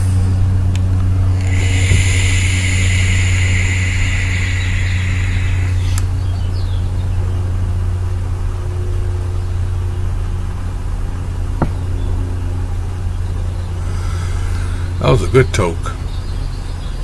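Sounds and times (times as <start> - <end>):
low idling hum: 0.0 - 17.0
vape hissing draw: 1.3 - 6.3.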